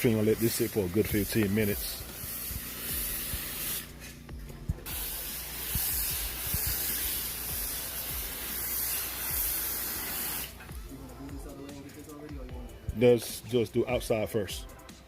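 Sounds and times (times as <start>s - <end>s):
pressure washer spray hiss: 0.0s - 4.2s, 4.8s - 10.7s.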